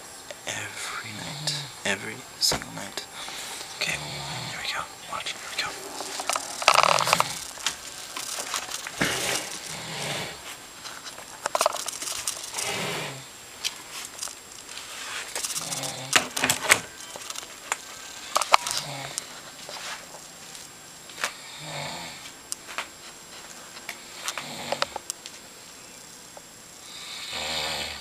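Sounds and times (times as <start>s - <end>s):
person snoring: 0.5s - 1.9s, 2.8s - 8.1s, 8.9s - 10.5s, 11.8s - 13.4s, 15.2s - 16.3s, 18.1s - 19.2s, 21.2s - 22.3s, 24.0s - 25.0s, 26.8s - 28.0s.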